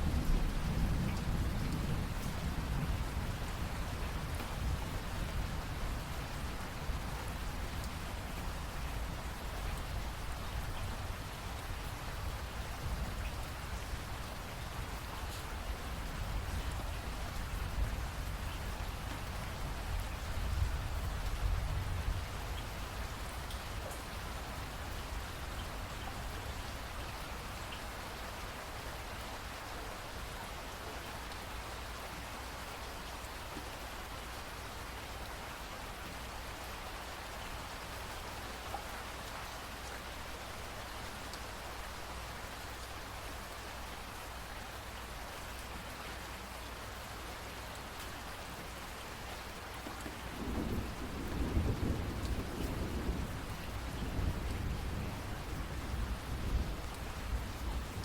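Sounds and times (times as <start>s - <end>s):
steady rain falling: 0.0s - 58.0s
thunder rumble: 50.2s - 58.0s.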